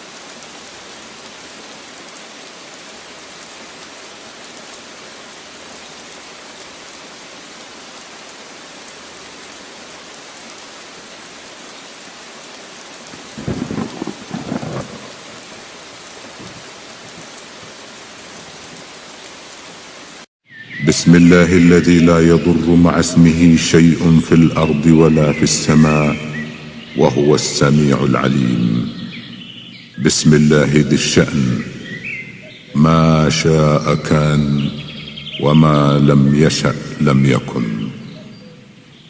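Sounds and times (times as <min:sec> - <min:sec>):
rain falling: 0:00.0 - 0:20.3, 0:20.9 - 0:39.0
thunder rumble: 0:13.1 - 0:15.6.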